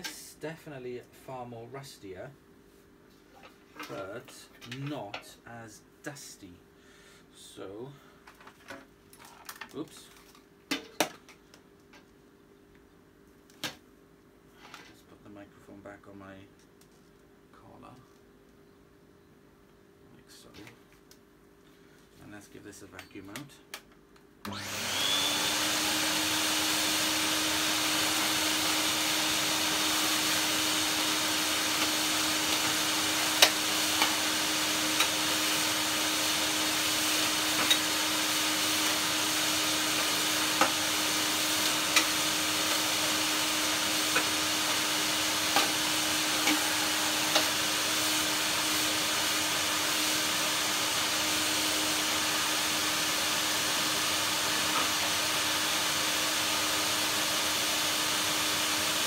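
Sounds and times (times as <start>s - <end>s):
vacuum cleaner running: 24.4s - 59.0s.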